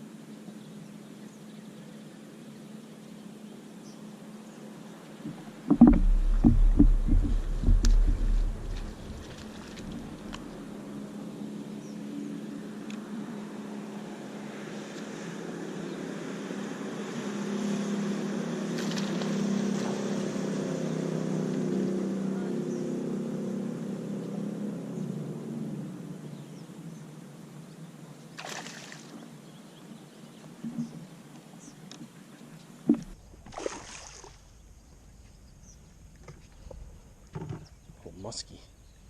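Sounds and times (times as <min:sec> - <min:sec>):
boat motor humming: 0:02.0 - 0:28.4, 0:29.0 - 0:33.6.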